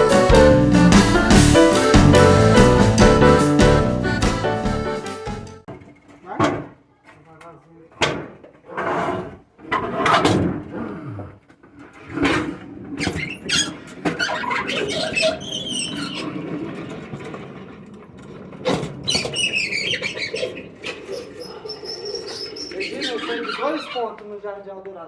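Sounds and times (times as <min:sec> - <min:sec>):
refrigerator squealing while scraping: 0:13.0 - 0:17.2, 0:18.6 - 0:24.4.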